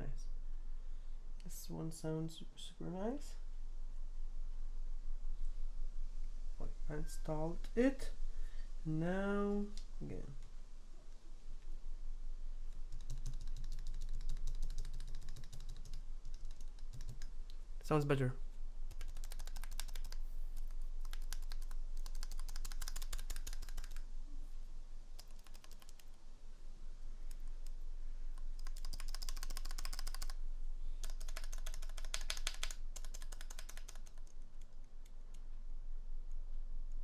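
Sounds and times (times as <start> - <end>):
mechanical keyboard typing: 12.9 - 17.3, 18.9 - 24.0, 25.2 - 26.2, 28.6 - 30.4, 31.0 - 34.3.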